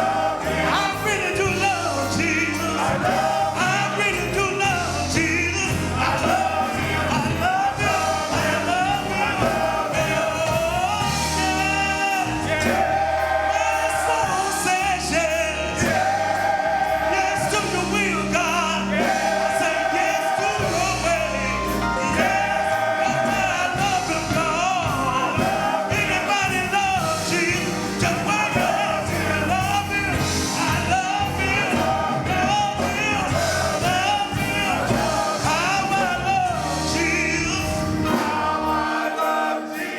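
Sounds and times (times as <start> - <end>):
bass notes: 0.0 - 39.1
choir singing gospel: 0.0 - 39.9
drum beat: 4.6 - 18.0, 22.2 - 39.0.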